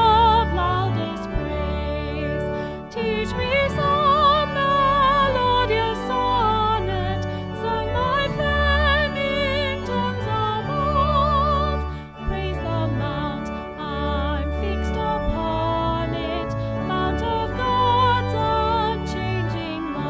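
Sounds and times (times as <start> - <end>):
person singing a hymn: 0.0 - 20.0
sustained instrumental accompaniment: 0.0 - 20.0.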